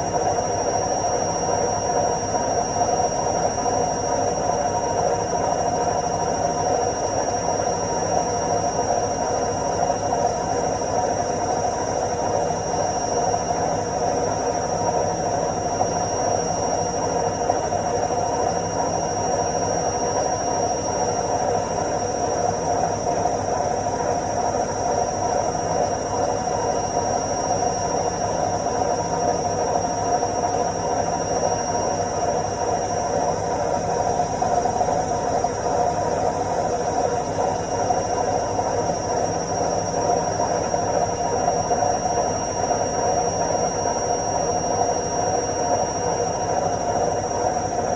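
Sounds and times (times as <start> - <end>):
washing machine spinning: 0.0 - 47.9.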